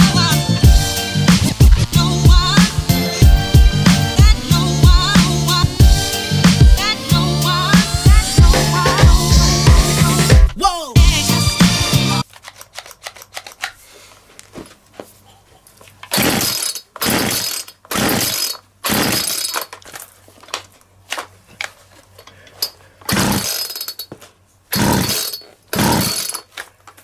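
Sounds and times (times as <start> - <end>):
chainsaw pull-start bursts: 16.1 - 19.8, 23.1 - 24.0, 24.7 - 26.6.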